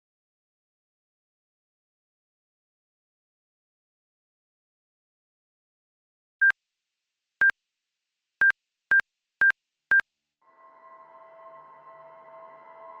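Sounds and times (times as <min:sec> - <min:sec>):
ambient music drone: 0:10.4 - 0:13.0.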